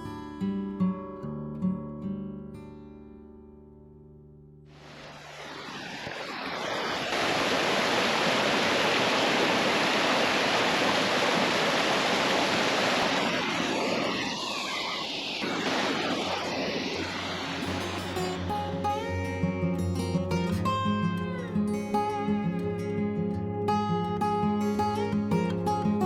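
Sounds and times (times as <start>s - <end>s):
waterfall rushing: 4.7s - 19.6s.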